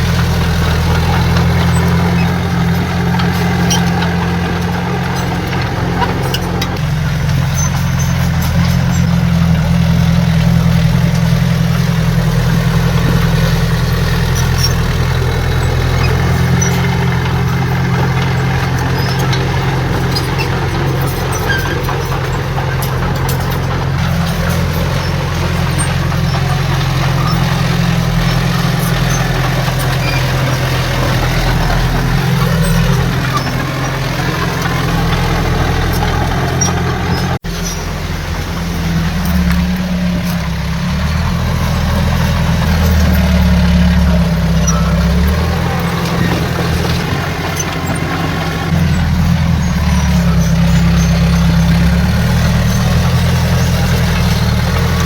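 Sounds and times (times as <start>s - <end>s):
heavy diesel engine droning: 0.0s - 55.0s.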